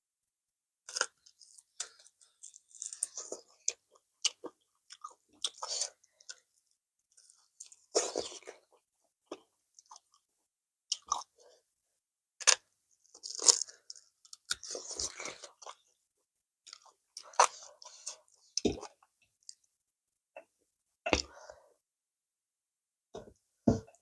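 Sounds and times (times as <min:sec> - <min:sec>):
person chewing and eating: 0:00.9 - 0:06.4, 0:16.6 - 0:19.1.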